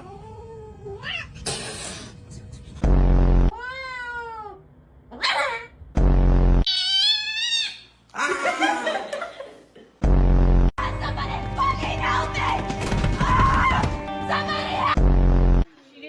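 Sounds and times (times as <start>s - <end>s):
loud flat buzz: 2.8s - 3.5s
cat meowing: 6.7s - 7.9s.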